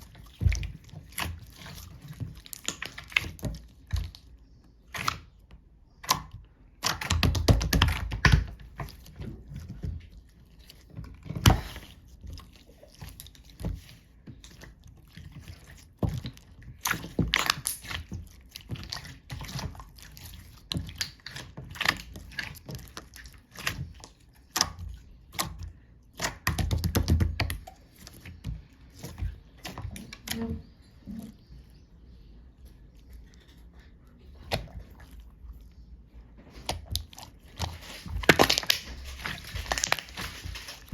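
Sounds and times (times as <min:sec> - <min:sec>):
slime crackling: 0:00.0 - 0:05.4, 0:06.0 - 0:30.6, 0:36.6 - 0:40.9
slime squished by hand: 0:00.0 - 0:30.5, 0:36.5 - 0:40.9.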